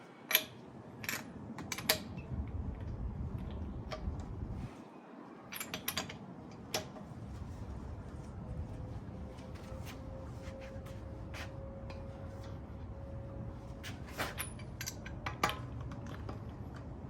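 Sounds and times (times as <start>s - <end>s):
metallic clinks of wrench on lug nuts: 0.3s - 2.2s, 14.4s - 16.2s.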